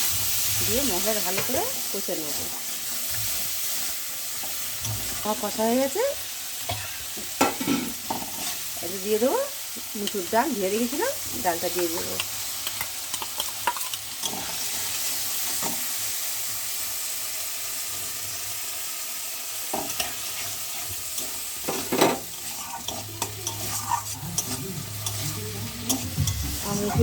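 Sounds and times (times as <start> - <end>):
lentils sizzling in a pan: 0.0 - 27.0
spatula scraping and knocking pan: 0.1 - 1.8, 19.7 - 27.0.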